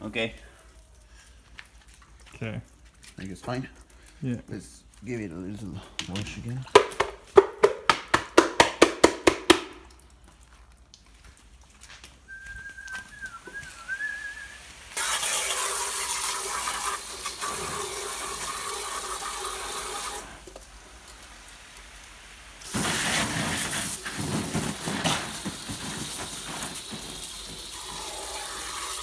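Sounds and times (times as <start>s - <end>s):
wavering whistle: 12.3s - 14.7s
water gushing: 12.3s - 29.0s
scrubbing strokes: 22.7s - 28.7s.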